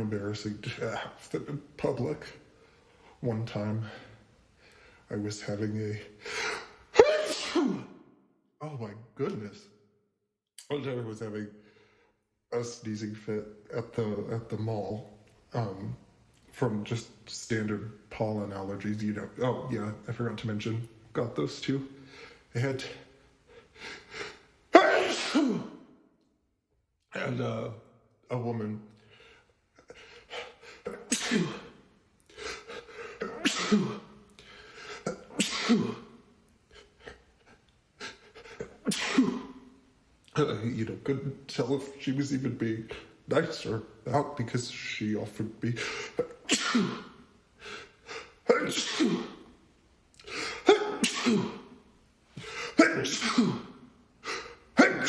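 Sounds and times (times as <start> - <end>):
man sneezing hard: 6.3 - 8.0, 24.0 - 25.9, 29.9 - 36.2, 38.0 - 39.7, 45.8 - 49.6, 50.2 - 51.8, 52.4 - 55.0.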